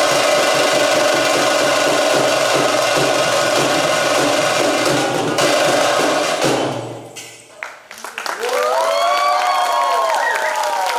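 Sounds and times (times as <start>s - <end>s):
drum-led percussion music: 0.0s - 7.6s.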